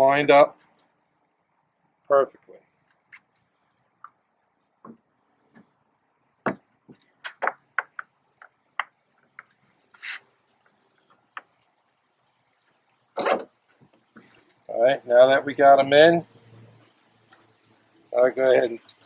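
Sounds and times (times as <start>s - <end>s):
straps zipped down: 10.0s - 10.2s, 13.2s - 13.5s.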